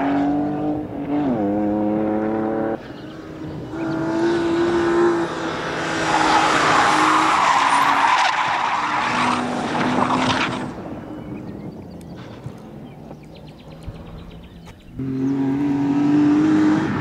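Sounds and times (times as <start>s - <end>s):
rally car engine: 0.0s - 17.0s
tyre skid: 5.5s - 10.8s.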